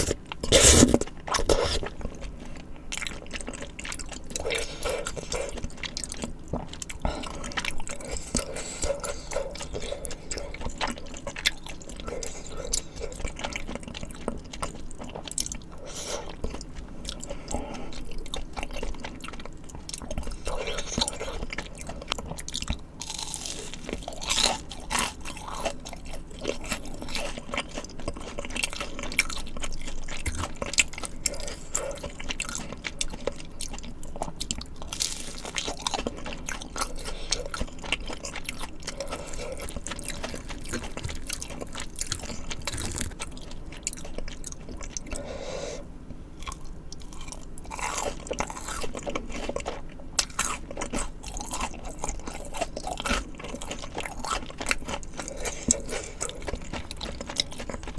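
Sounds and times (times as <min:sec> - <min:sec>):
person chewing crunchy food: 0:00.0 - 0:57.9.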